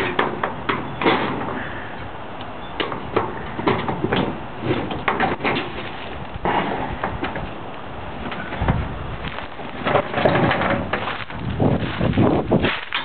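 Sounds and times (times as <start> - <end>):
sheet-metal panels knocking and rattling: 0.0 - 1.6, 2.8 - 5.8, 9.8 - 11.1.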